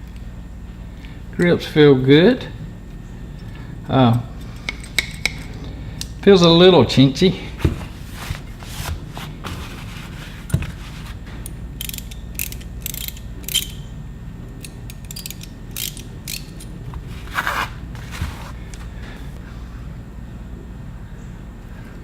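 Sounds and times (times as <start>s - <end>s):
hand ratchet clicking: 11.8s - 13.8s, 14.6s - 16.7s
ratchet rattle: 11.8s - 13.8s, 14.6s - 16.7s.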